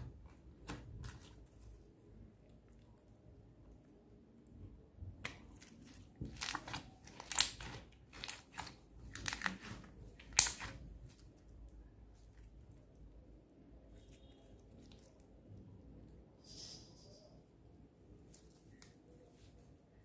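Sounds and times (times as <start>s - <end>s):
slime crunchy crackles and pops: 5.3s - 11.3s.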